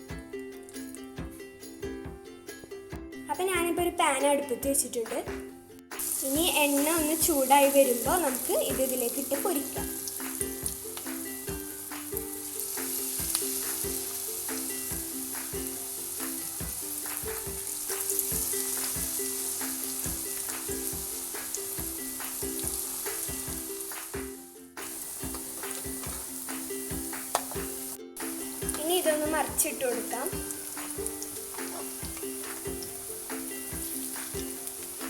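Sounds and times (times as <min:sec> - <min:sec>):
background music melody: 0:00.0 - 0:35.0
fritters sizzling in hot oil: 0:06.0 - 0:35.0.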